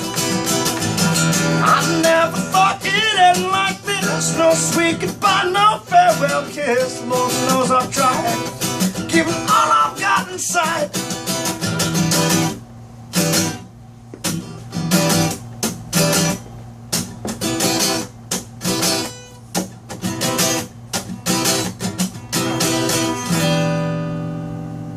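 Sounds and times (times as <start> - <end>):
acoustic guitar strumming chords: 0.0 - 24.9.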